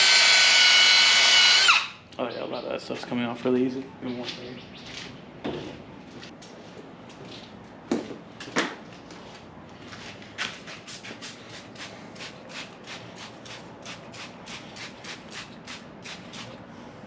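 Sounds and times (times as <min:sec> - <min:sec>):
spray bottle squirting: 0:10.9 - 0:16.6.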